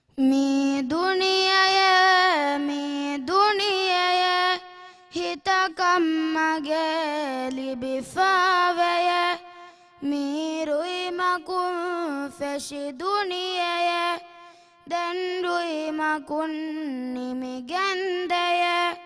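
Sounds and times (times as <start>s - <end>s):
woman singing unaccompanied: 0.1s - 19.0s.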